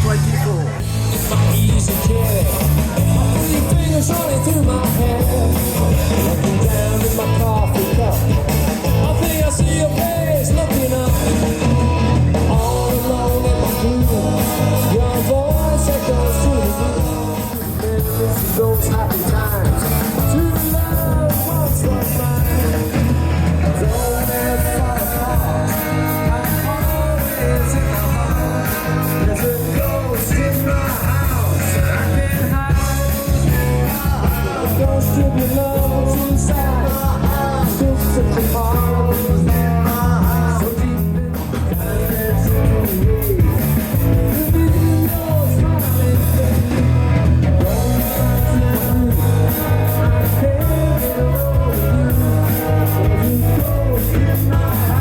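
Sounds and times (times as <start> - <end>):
rock band playing loud: 0.0 - 55.0.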